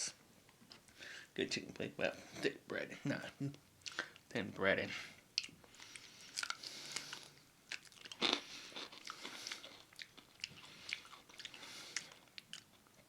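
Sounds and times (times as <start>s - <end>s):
crunchy chewing of fried chicken: 5.2s - 13.0s.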